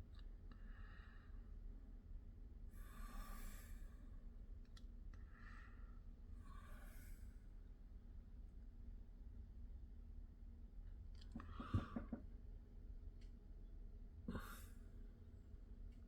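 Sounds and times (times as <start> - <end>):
soft breathing: 0.5 - 1.6, 2.7 - 4.4, 5.2 - 7.8, 14.2 - 16.0.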